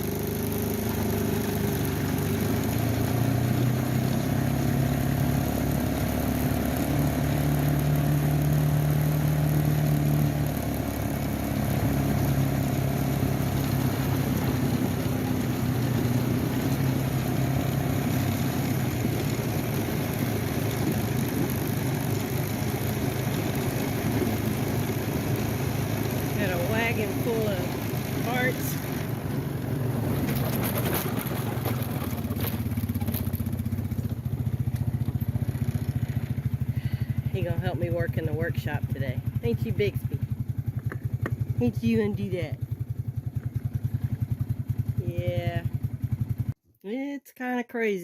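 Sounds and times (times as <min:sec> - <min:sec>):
motor hum: 0:00.0 - 0:36.8.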